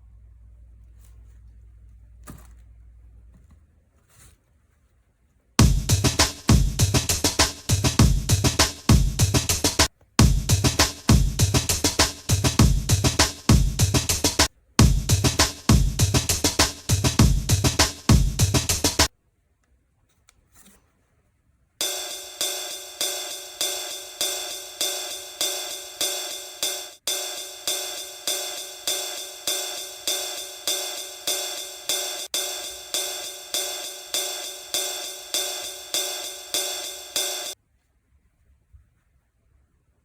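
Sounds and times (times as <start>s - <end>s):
electronic background music: 5.6s - 19.1s, 21.8s - 37.6s
shimmering looped music pattern: 21.8s - 37.6s.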